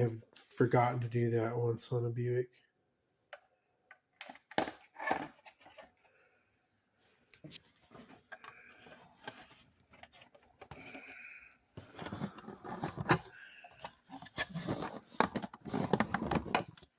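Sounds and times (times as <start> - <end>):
plastic parts clicking and knocking: 3.3 - 6.0, 11.8 - 16.9.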